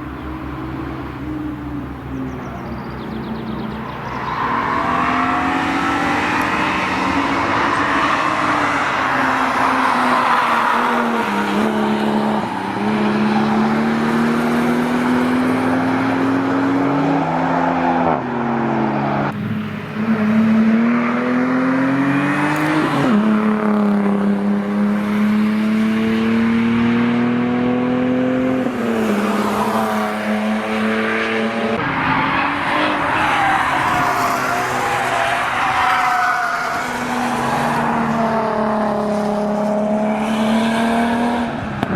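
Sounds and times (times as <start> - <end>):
tyres squealing: 31.8 - 37.8.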